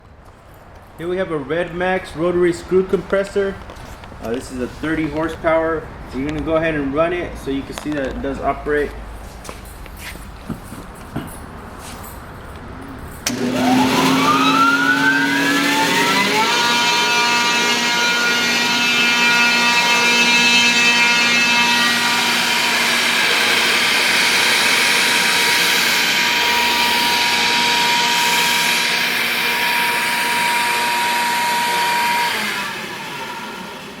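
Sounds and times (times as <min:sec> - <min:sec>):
air compressor whining: 0:13.2 - 0:34.0.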